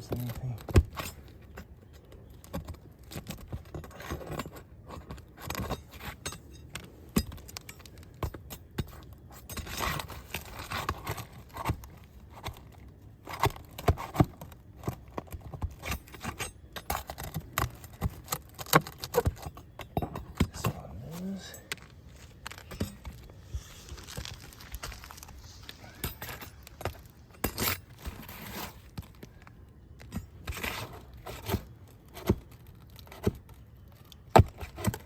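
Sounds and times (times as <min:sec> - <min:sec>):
small clicks and taps of shingles: 0:00.0 - 0:20.8, 0:21.5 - 0:35.0
roof shingles scraping: 0:20.4 - 0:29.4.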